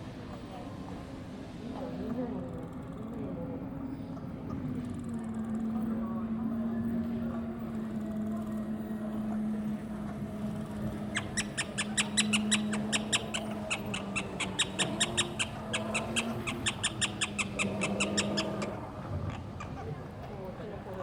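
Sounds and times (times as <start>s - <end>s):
steady low hum: 0.0s - 21.0s
small animal chirping: 11.0s - 18.8s.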